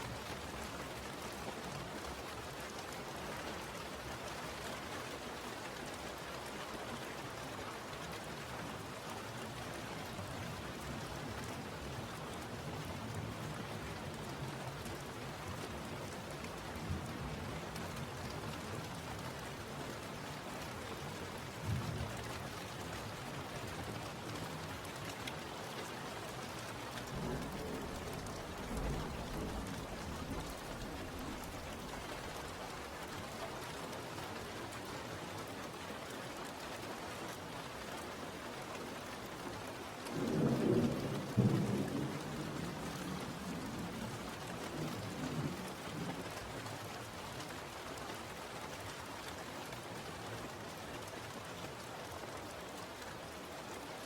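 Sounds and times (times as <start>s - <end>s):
steady rain falling: 0.0s - 54.0s
thunder rumbling: 27.0s - 32.7s.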